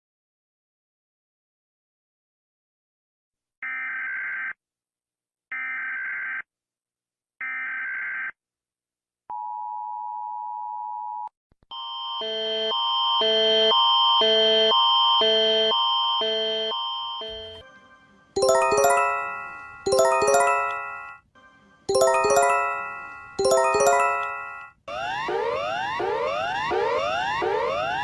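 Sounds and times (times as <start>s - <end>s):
two-note alert chime: 18.4s - 21.2s, 21.9s - 24.7s.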